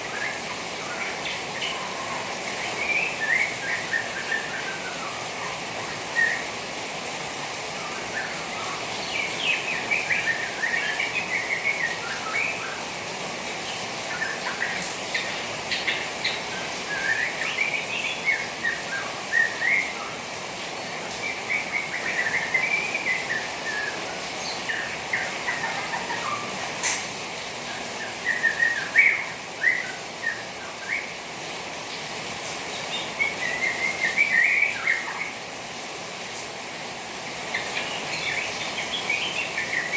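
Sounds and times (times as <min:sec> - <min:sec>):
steady hiss: 0:00.0 - 0:39.9
bird twittering: 0:21.2 - 0:27.0, 0:27.7 - 0:31.2.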